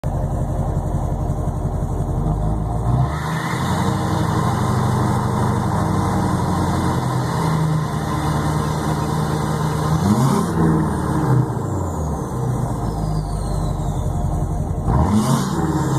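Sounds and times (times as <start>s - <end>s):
diesel engine idling: 0.0s - 15.9s
engine revving: 2.2s - 15.9s
turbo whistle: 12.8s - 14.4s.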